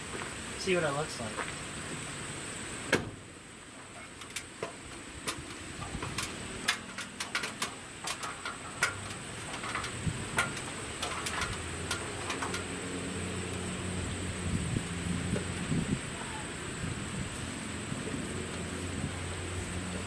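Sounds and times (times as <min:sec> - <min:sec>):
sheet metal clicks and clanks: 0:03.8 - 0:13.7.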